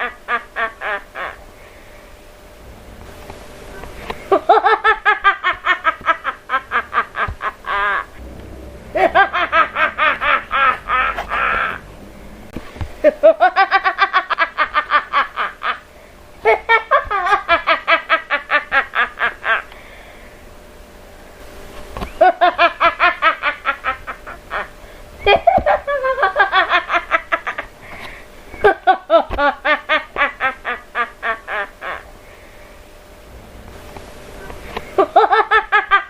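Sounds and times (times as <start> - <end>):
woman cackling: 8.9 - 11.9, 13.0 - 15.8.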